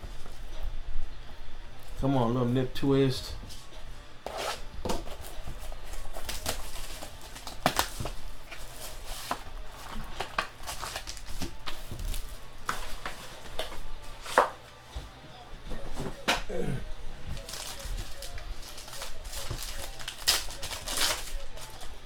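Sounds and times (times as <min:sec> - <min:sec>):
cards and packaging handled: 0:04.3 - 0:14.7, 0:17.3 - 0:22.0.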